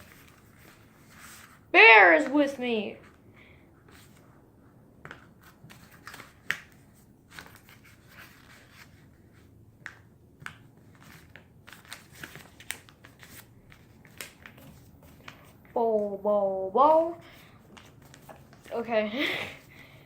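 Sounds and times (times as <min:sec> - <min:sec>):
paper crackles: 0:00.0 - 0:01.6, 0:05.1 - 0:15.8, 0:17.2 - 0:19.7
paper rustling and crinkling: 0:00.0 - 0:02.4, 0:05.0 - 0:15.8, 0:17.2 - 0:19.8.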